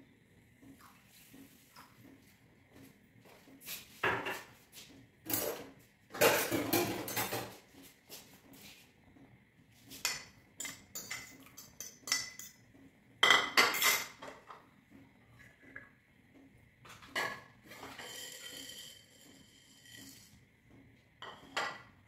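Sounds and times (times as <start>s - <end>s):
utensils clinking against dishes: 5.3s - 7.6s, 9.9s - 14.6s, 17.0s - 20.4s.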